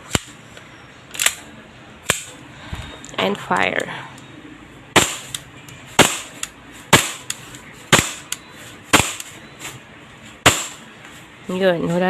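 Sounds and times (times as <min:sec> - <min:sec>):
airsoft pistol shots: 0:05.0 - 0:05.3, 0:06.0 - 0:07.3, 0:07.9 - 0:08.3, 0:08.9 - 0:09.3, 0:10.4 - 0:10.8.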